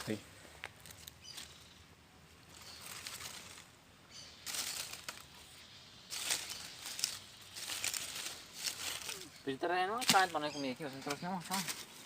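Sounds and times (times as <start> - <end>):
dry leaves rustling and crunching: 0.0 - 1.8, 2.4 - 12.0.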